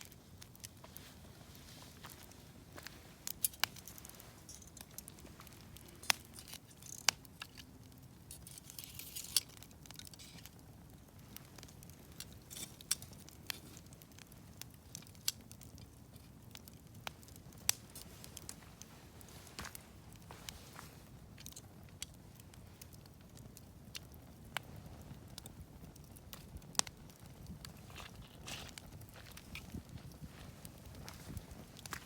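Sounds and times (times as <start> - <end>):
campfire crackling and popping: 0.0 - 32.0.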